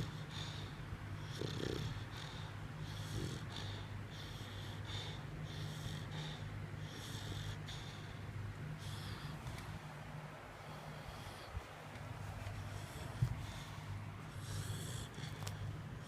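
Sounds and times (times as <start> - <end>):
dog snoring: 0.0 - 9.6, 12.6 - 16.0.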